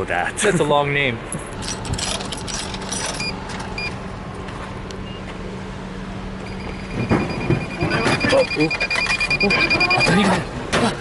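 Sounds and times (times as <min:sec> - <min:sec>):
low mechanical hum: 0:00.0 - 0:11.0
short electronic beeps: 0:06.4 - 0:10.5.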